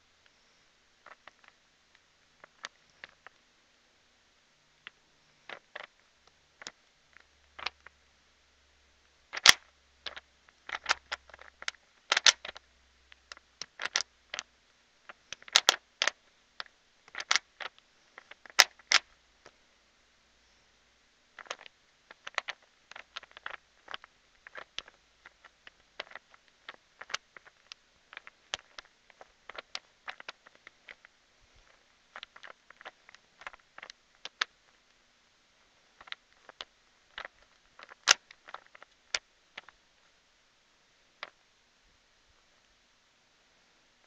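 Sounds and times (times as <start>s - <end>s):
puzzle cube plastic clicks: 1.0s - 3.4s, 4.8s - 7.9s, 9.3s - 19.2s, 21.3s - 34.9s, 35.9s - 40.1s.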